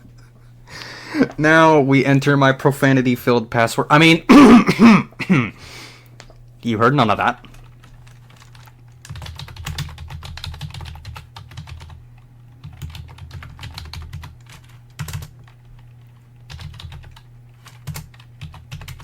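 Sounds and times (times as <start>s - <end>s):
computer keyboard typing: 7.2s - 19.0s.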